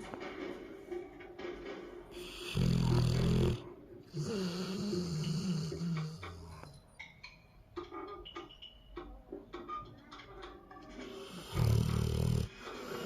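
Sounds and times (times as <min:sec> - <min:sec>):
person snoring: 0:02.2 - 0:06.7, 0:11.2 - 0:13.0.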